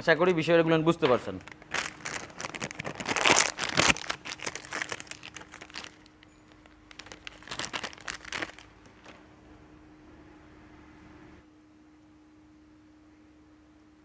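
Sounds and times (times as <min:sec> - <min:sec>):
faint steady hum: 0:00.0 - 0:14.0
crinkling rustling handling: 0:01.0 - 0:09.3.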